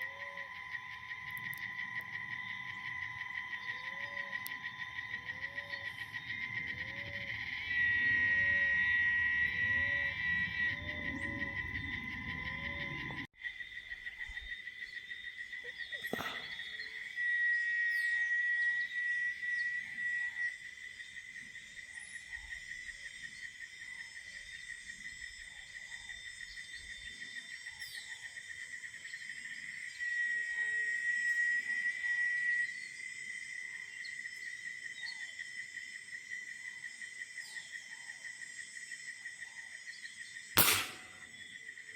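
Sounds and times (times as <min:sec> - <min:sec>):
pulsing insect trill: 0:00.0 - 0:41.9
sharp click: 0:40.6 - 0:41.3.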